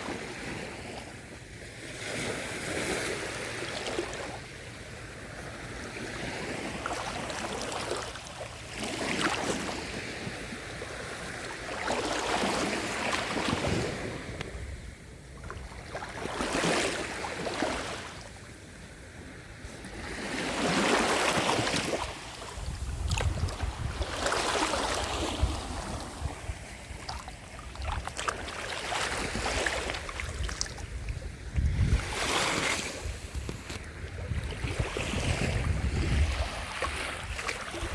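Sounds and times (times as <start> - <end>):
sea waves washing on sand: 5.4 - 18.6, 19.6 - 37.9
wind buffeting microphone: 22.1 - 37.9.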